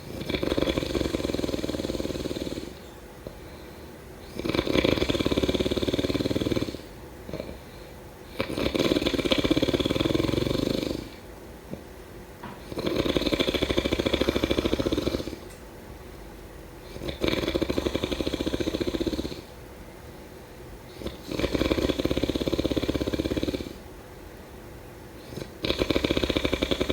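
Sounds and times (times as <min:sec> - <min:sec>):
fluttering rattling snores: 0:00.0 - 0:03.4, 0:04.2 - 0:11.8, 0:12.4 - 0:15.6, 0:16.8 - 0:19.5, 0:20.9 - 0:23.9, 0:25.2 - 0:26.9.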